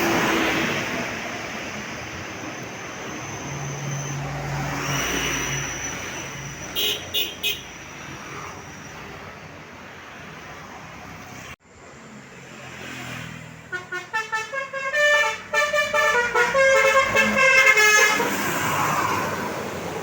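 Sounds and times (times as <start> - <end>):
engine and road noise: 0.0 - 20.0
traffic noise: 0.0 - 20.0
musical bus air horn tune: 6.8 - 7.7, 13.7 - 18.6.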